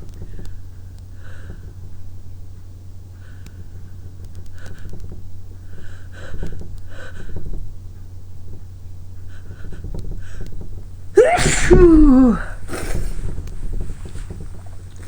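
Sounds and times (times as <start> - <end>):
woman sniffing through nose: 11.2 - 13.3.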